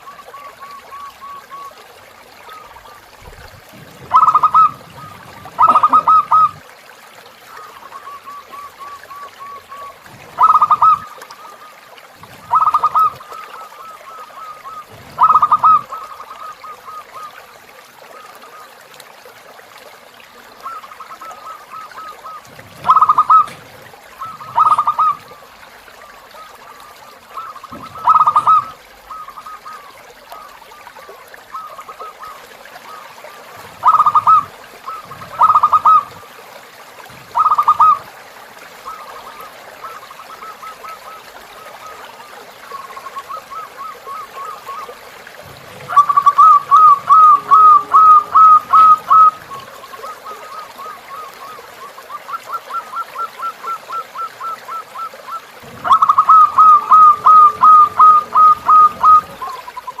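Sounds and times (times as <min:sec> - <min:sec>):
flowing river water: 0:00.0 - 1:00.0
dove cooing: 0:02.5 - 0:06.7, 0:07.5 - 0:17.4, 0:20.6 - 0:25.5, 0:26.2 - 0:30.5, 0:31.5 - 0:36.3, 0:37.1 - 0:38.1, 0:42.7 - 1:00.0.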